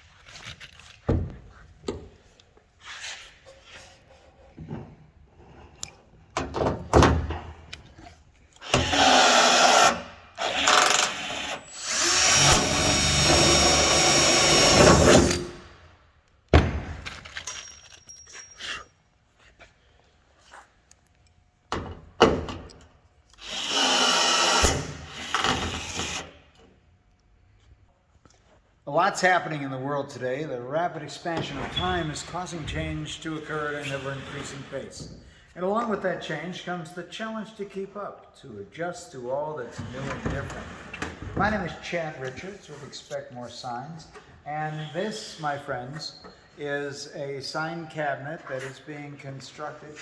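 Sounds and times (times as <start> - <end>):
power drill running: 8.6 - 15.6, 23.4 - 26.3.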